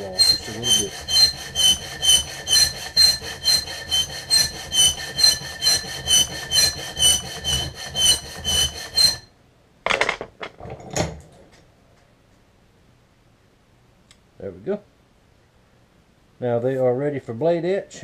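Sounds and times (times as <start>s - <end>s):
hand file cutting steel blade: 0.0s - 9.3s.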